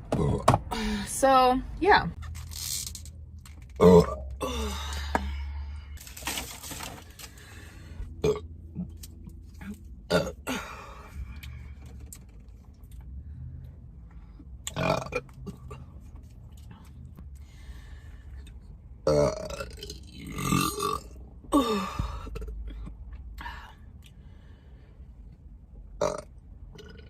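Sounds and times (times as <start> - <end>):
woman burping: 3.8 - 5.3, 10.1 - 10.9, 20.2 - 22.6.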